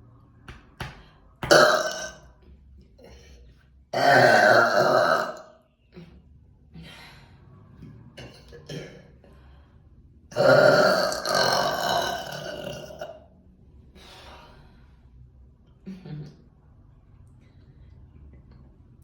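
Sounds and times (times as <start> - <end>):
woman burping: 1.5 - 2.2, 4.0 - 5.5, 10.3 - 13.2.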